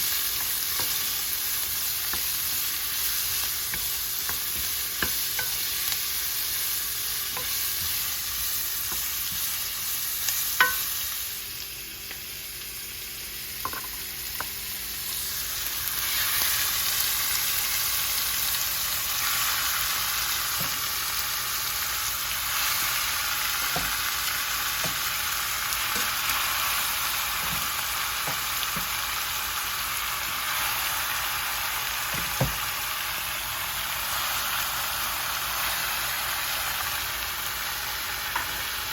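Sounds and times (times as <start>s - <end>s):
food sizzling in a frying pan: 0.0s - 38.9s
utensil tapping a pan: 3.6s - 5.8s, 10.6s - 10.9s, 23.6s - 24.0s.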